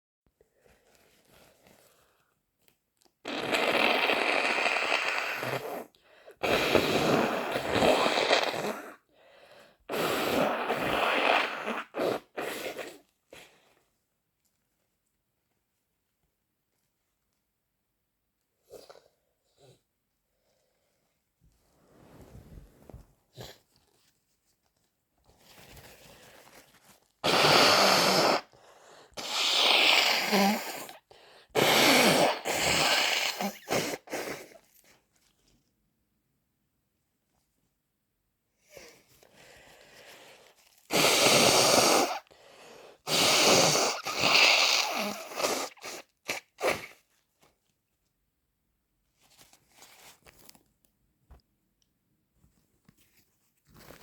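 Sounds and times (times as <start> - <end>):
person blowing nose hard: 3.2 - 9.0, 9.9 - 13.6, 27.2 - 34.7, 40.0 - 47.1.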